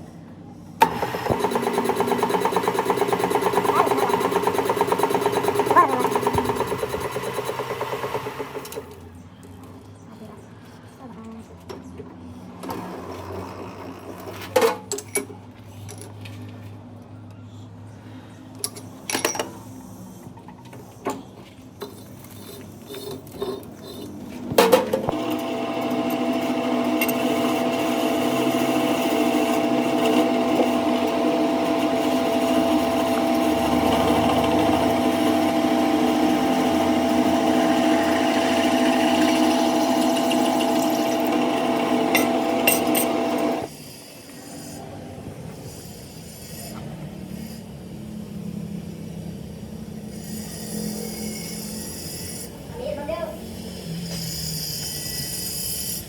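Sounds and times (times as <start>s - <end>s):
electric motor humming: 0.8s - 8.9s, 25.1s - 43.7s.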